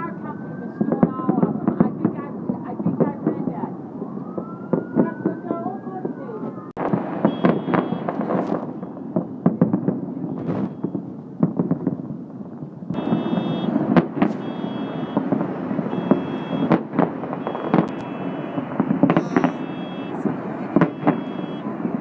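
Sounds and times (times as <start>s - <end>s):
fireworks bangs and crackles: 0.0s - 22.0s
faint high beeping tone: 17.4s - 18.5s, 19.2s - 20.2s, 20.8s - 21.7s.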